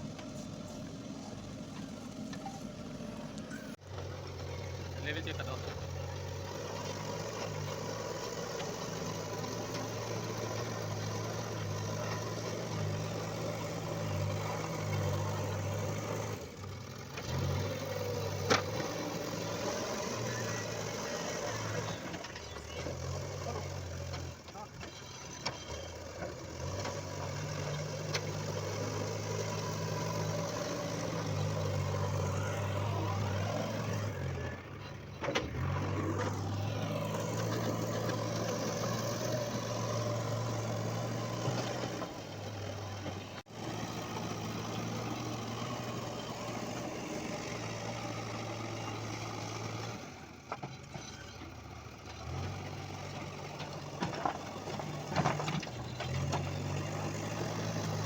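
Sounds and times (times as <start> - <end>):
backhoe diesel engine running: 0.0 - 58.0.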